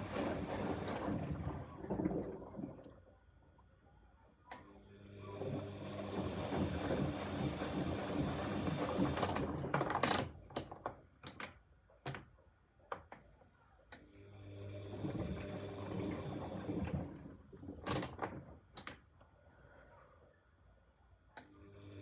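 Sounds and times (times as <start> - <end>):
washing machine drum motor hum: 0.0 - 2.9, 5.2 - 10.4, 14.7 - 18.8.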